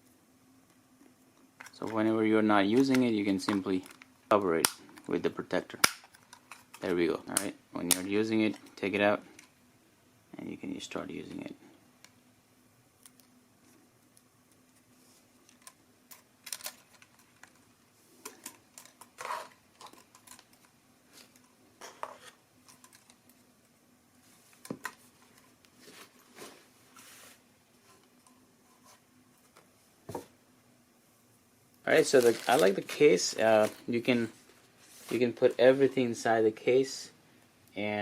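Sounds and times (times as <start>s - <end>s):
plastic parts rustling: 15.4s - 23.4s, 31.9s - 36.2s.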